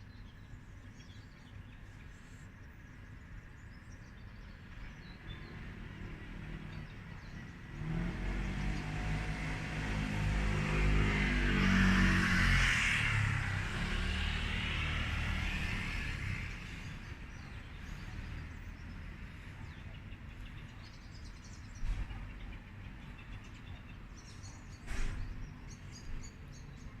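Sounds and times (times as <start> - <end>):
vehicle passing: 5.2 - 19.6.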